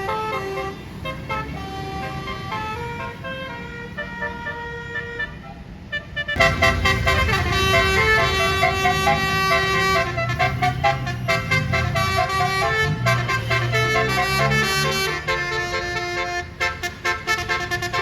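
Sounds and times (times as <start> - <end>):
bus engine running: 0.0 - 18.0
bus multi-tone air horns: 0.0 - 18.0.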